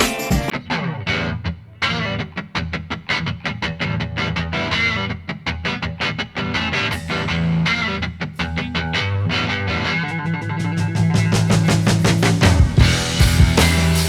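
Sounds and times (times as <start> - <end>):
guitar picking quick notes: 0.0 - 14.0.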